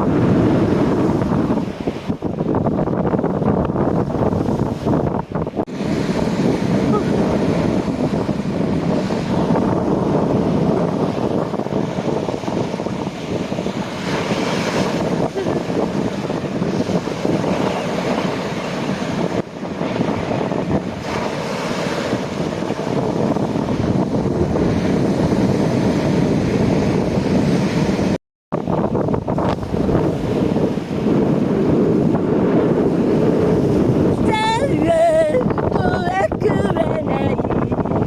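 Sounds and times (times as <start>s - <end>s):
ocean waves washing in: 0.0s - 38.0s
wind buffeting microphone: 0.0s - 38.0s.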